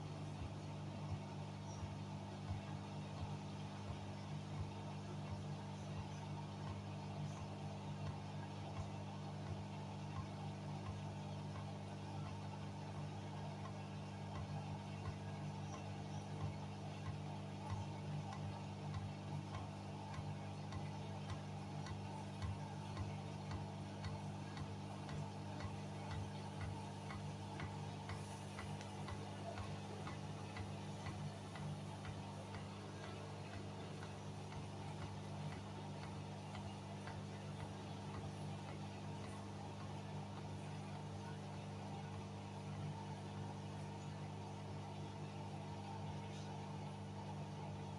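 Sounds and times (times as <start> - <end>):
washing machine humming: 0.0 - 47.9
light regular ticking: 6.6 - 44.3.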